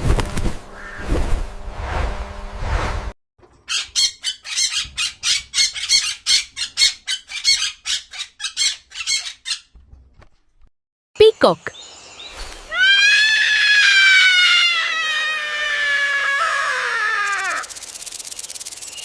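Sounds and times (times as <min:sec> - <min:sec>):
parrot squawking: 0:03.7 - 0:09.7.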